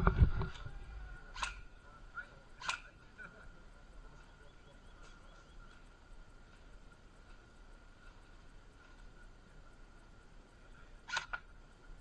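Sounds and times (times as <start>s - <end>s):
faint bird chirps: 0.6s - 7.0s.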